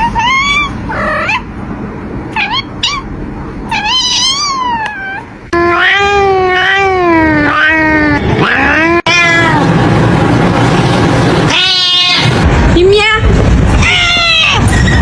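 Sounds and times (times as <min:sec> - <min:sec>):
cat meowing: 0:00.0 - 0:01.5, 0:02.3 - 0:03.1, 0:03.7 - 0:09.7, 0:11.5 - 0:12.4, 0:13.8 - 0:14.7
loud steady noise: 0:07.1 - 0:15.0.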